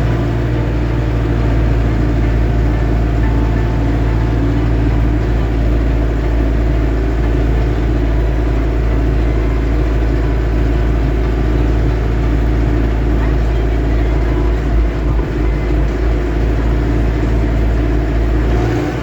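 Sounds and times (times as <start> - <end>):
tractor engine droning: 0.0 - 19.0.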